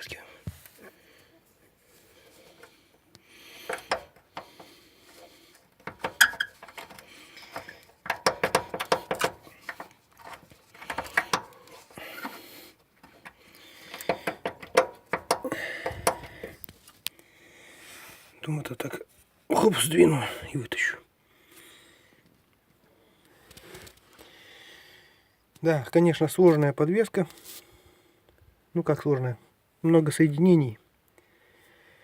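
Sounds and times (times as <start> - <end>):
sharp clicks and knocks: 3.6 - 12.4, 13.0 - 16.8.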